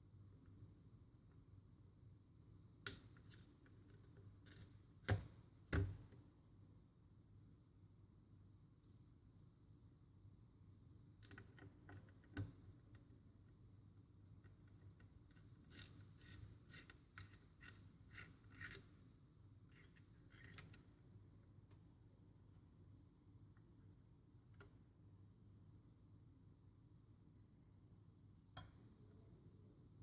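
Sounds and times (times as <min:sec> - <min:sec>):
tools and parts clicking: 0:02.9 - 0:06.0, 0:14.3 - 0:21.0.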